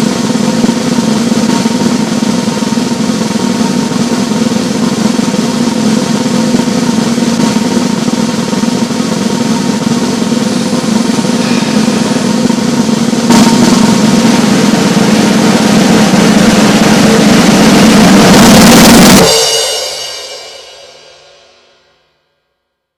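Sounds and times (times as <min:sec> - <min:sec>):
snare drum roll: 0:00.0 - 0:21.0
ringing drum hit: 0:05.8 - 0:22.0.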